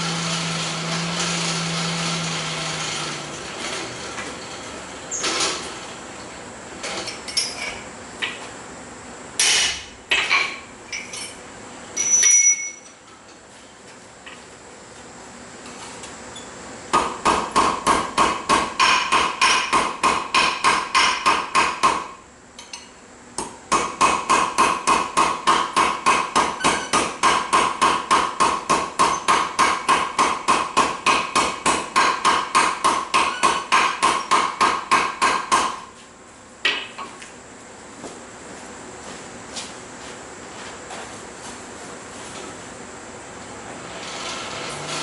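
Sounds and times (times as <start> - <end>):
hammer striking steel on anvil: 16.9 - 35.8.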